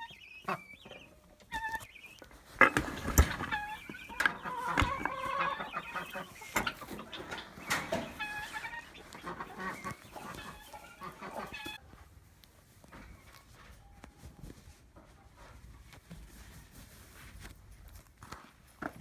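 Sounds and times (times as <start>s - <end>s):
chickens calling: 0.0s - 11.8s.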